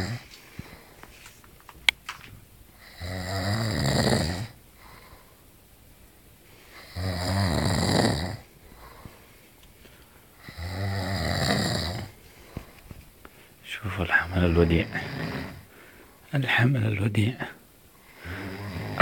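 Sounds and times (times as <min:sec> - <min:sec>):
man snoring: 0:00.0 - 0:00.3, 0:02.8 - 0:05.3, 0:06.7 - 0:09.1, 0:10.4 - 0:12.2, 0:14.2 - 0:15.7, 0:18.1 - 0:19.0.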